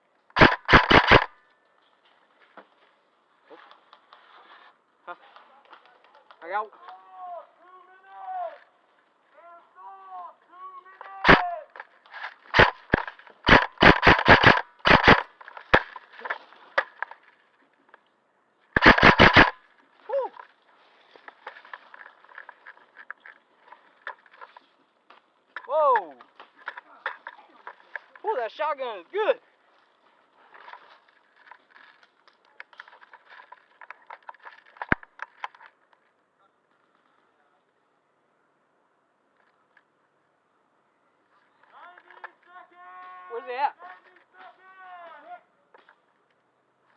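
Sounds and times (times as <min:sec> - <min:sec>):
sharp clicks and taps: 0:00.3 - 0:01.3, 0:12.5 - 0:17.2, 0:18.8 - 0:19.6
airsoft guns firing: 0:00.4 - 0:01.4, 0:11.2 - 0:11.8, 0:12.5 - 0:17.1, 0:18.8 - 0:19.7.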